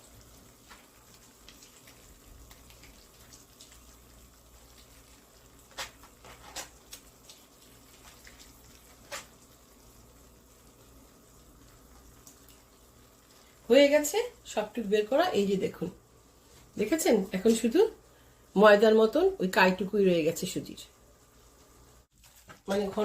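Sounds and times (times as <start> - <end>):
liquid dripping: 0.0 - 5.7, 6.8 - 13.7
hands squeezing wet semolina: 0.0 - 13.7.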